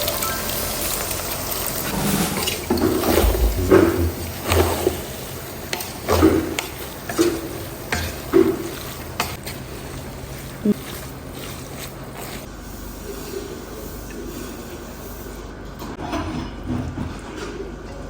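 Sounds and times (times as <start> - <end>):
frying hiss: 0.0 - 15.5.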